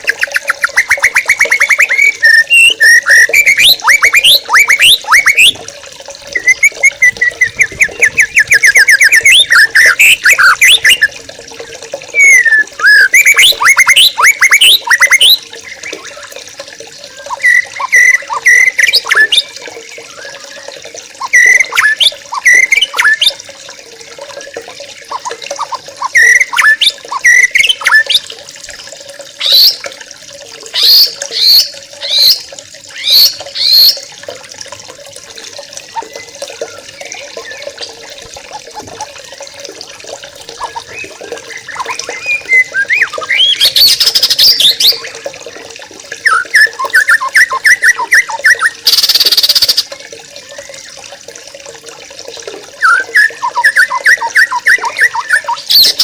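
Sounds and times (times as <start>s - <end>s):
birds chattering: 0.0s - 5.6s, 6.3s - 23.4s, 24.5s - 28.2s, 29.4s - 29.8s, 30.7s - 34.1s, 40.3s - 51.0s, 52.8s - 56.0s.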